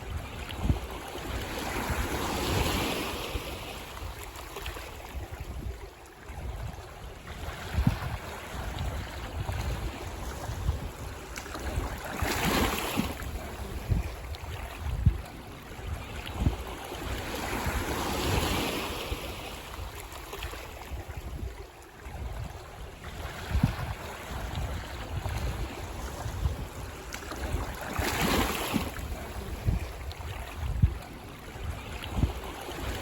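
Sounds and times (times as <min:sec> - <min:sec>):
ocean waves breaking on beach: 0:00.0 - 0:33.0.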